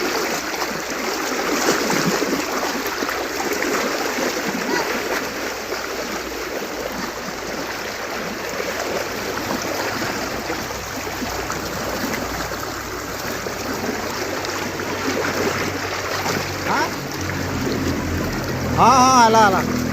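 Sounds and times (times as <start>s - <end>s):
river water running and splashing: 0.0s - 19.9s
water trickling: 0.0s - 19.9s.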